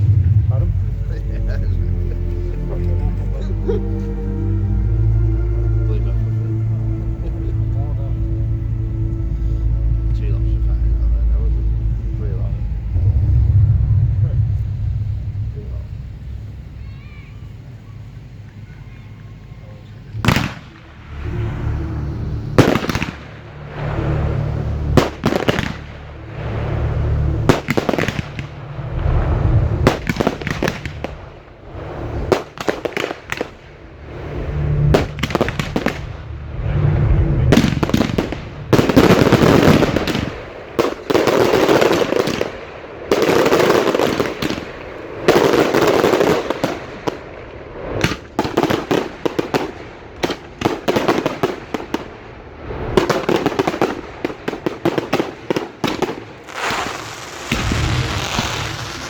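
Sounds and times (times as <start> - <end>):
fireworks crackling and rushing: 0.0 - 4.6, 5.4 - 59.0
fireworks bangs: 11.0 - 21.6, 22.6 - 59.0.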